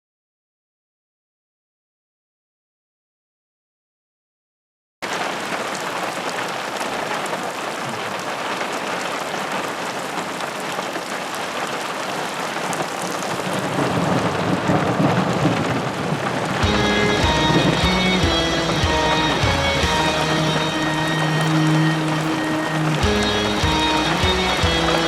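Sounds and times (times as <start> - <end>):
heavy rain pouring: 5.0 - 25.0.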